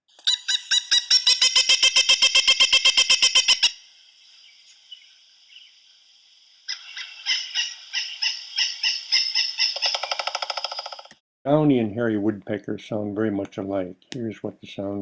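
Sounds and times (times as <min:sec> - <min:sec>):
woodpecker call series: 0:00.1 - 0:05.8, 0:06.6 - 0:11.2.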